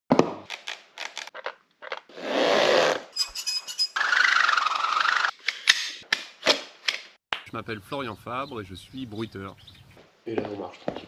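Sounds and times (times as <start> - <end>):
long wavering creak: 2.3 - 5.3.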